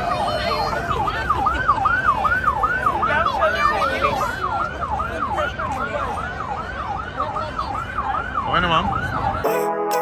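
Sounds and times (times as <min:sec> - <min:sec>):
siren yelping: 0:00.0 - 0:10.0.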